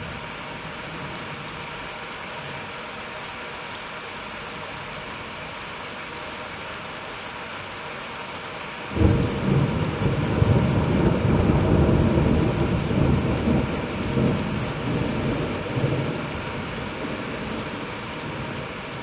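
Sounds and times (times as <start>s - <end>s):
heavy rain hissing: 0.0s - 19.0s
thunder rumbling: 8.9s - 19.0s.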